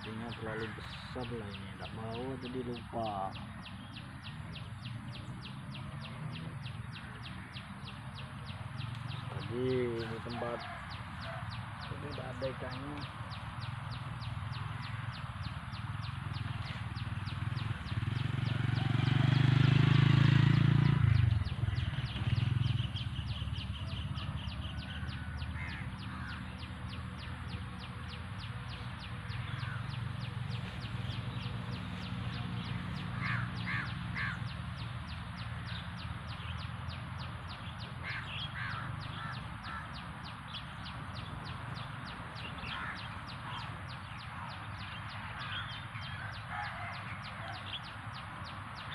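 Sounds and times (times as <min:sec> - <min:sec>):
bird cawing: 0:09.1 - 0:17.2, 0:24.6 - 0:26.7, 0:29.2 - 0:34.9, 0:38.0 - 0:44.2, 0:45.4 - 0:47.9.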